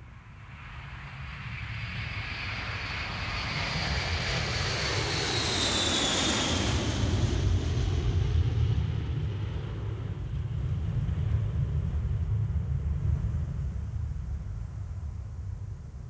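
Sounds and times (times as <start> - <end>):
jet engine low rumble: 0.0 - 16.0
jet engine whine: 1.5 - 13.2.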